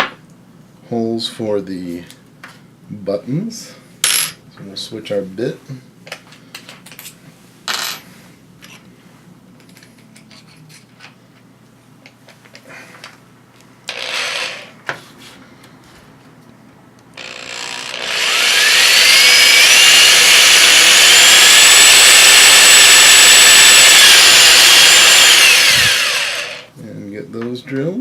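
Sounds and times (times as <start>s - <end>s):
electric drill whine: 13.9s - 14.8s, 17.2s - 26.7s
scrape: 14.9s - 15.4s
drill bit click: 17.2s - 26.7s.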